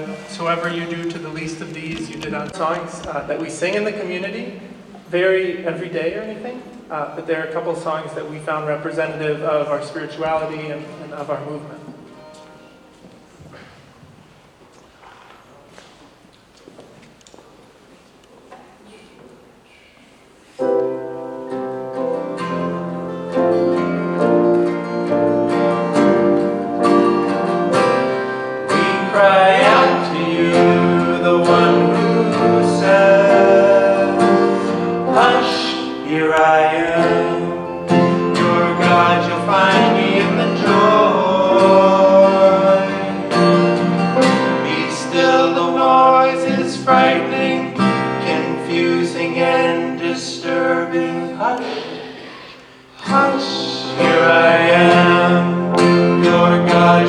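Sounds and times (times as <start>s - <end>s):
acoustic guitar strumming: 8.7s - 13.1s, 20.6s - 57.0s
person singing: 27.3s - 52.4s, 53.0s - 57.0s.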